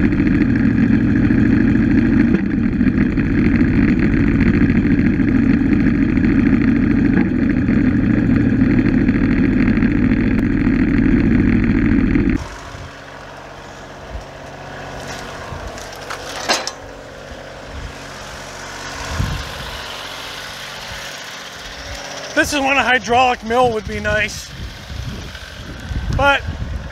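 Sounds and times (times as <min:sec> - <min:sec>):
engine idling: 0:00.0 - 0:26.9
engine running at high speed: 0:00.0 - 0:26.9
knocks and clunks: 0:15.8 - 0:16.8.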